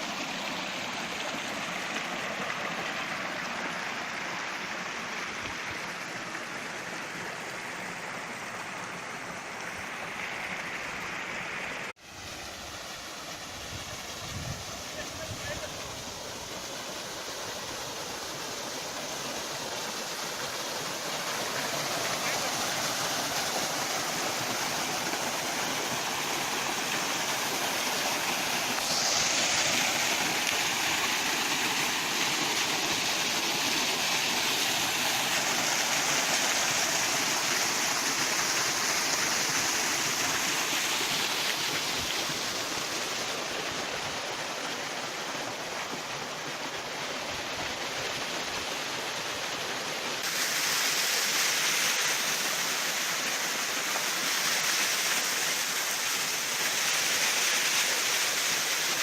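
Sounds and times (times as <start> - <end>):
waterfall rushing and splashing: 0.0 - 59.0.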